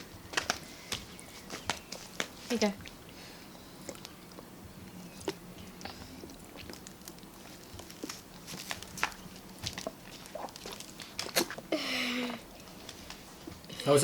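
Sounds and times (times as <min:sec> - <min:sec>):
person chewing: 0:02.8 - 0:11.7.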